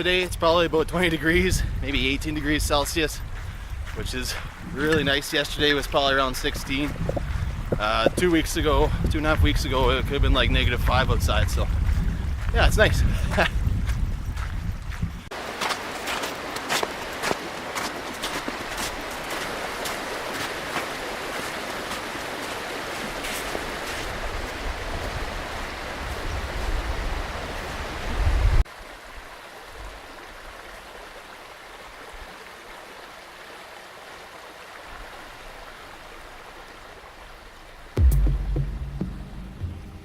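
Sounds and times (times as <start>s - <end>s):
stream rushing: 15.3s - 40.0s
deep thump: 38.0s - 40.0s
low rumble: 38.0s - 40.0s.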